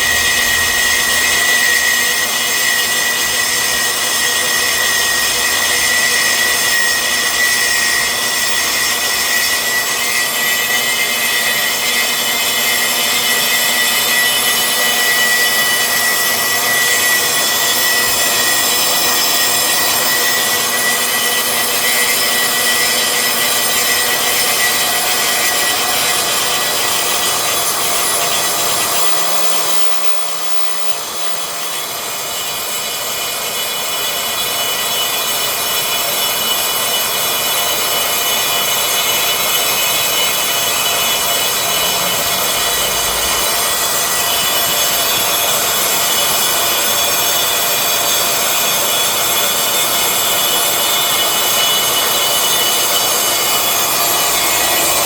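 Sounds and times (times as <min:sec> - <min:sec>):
band saw cutting steel: 0:00.0 - 0:55.0.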